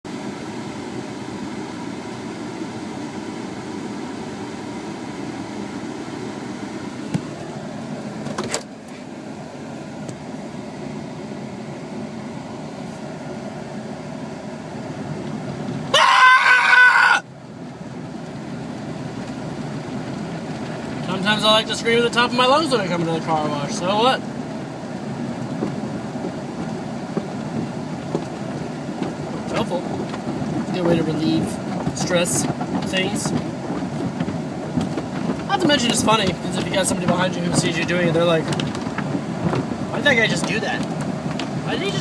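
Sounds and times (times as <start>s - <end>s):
car wash rushing: 1.5s - 42.0s
man screaming: 15.9s - 17.3s.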